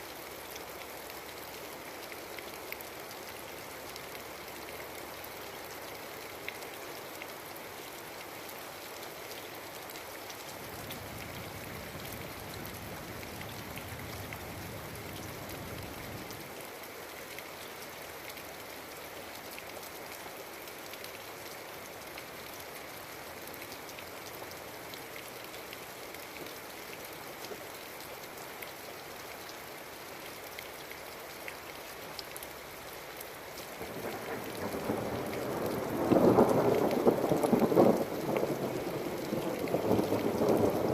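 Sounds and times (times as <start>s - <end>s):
steady rain falling: 0.0s - 40.9s
distant thunder rumble: 33.9s - 40.9s.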